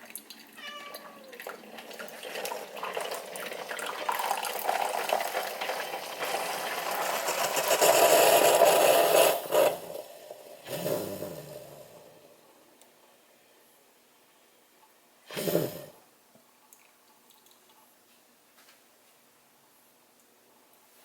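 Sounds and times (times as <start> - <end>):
coffee maker brewing: 0.0 - 12.5
coffee pouring into cup: 1.4 - 10.6.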